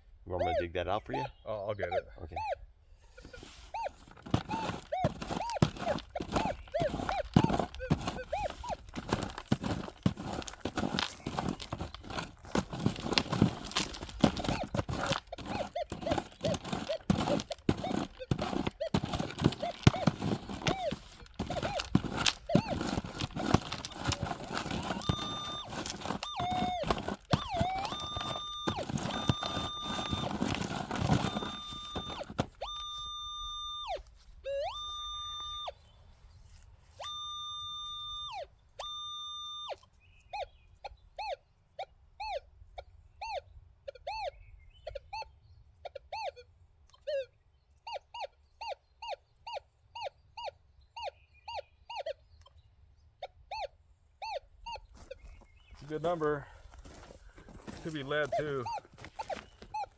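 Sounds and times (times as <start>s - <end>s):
metal detector beeps: 0.3s - 35.8s, 36.9s - 39.9s, 53.5s - 59.9s
metal detector chirps: 0.4s - 35.8s, 37.0s - 39.8s, 53.5s - 59.9s
digging scraping and clattering: 3.2s - 32.8s, 55.2s - 59.9s.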